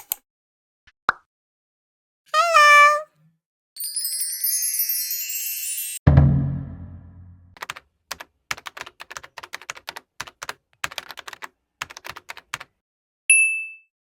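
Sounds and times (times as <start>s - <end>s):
keyboard typing clicks: 7.6s - 12.7s.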